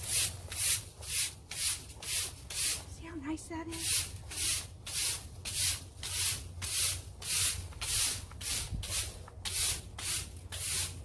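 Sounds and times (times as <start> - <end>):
broom sweeping: 0.0 - 11.0.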